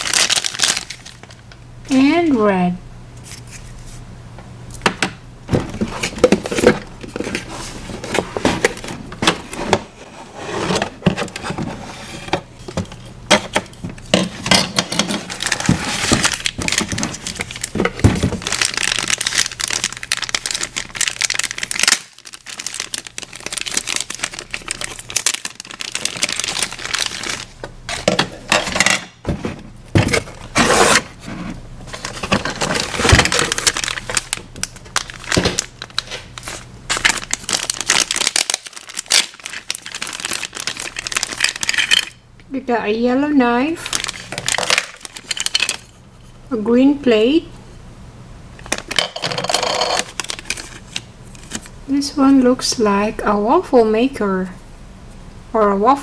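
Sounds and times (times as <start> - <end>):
plastic packaging crinkling and tearing: 0.0 - 1.6, 12.6 - 42.2, 43.8 - 46.0, 48.6 - 51.8.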